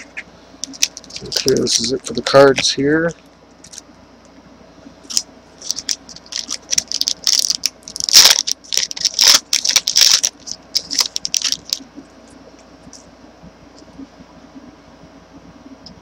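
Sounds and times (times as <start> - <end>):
wrapper crinkling: 0.6 - 2.2, 3.6 - 3.8, 5.1 - 11.8.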